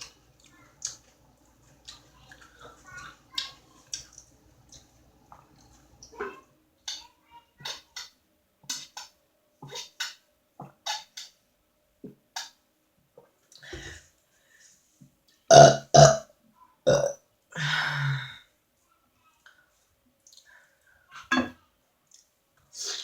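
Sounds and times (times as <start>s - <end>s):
loud burps: 15.5s - 16.3s, 16.9s - 17.2s, 21.3s - 21.6s.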